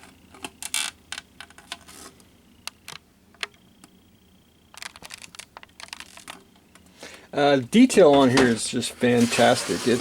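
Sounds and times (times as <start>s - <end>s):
plastic sprues clicking: 4.7s - 6.4s.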